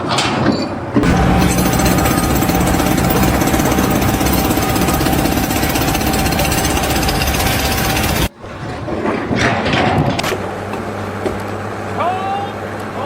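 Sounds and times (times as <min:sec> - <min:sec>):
construction machine hammering: 0:01.0 - 0:08.3.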